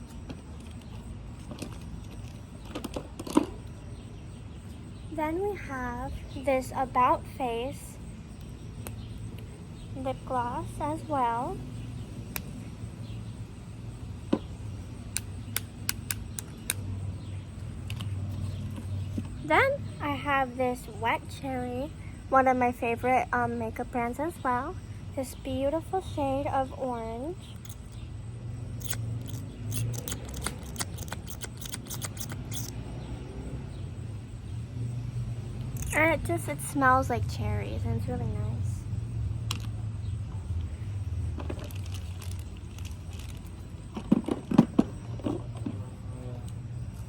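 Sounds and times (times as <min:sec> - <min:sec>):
low steady hum: 0:00.0 - 0:32.7
plastic tubes and caps clicking: 0:15.1 - 0:16.8, 0:28.8 - 0:32.7, 0:35.7 - 0:36.0.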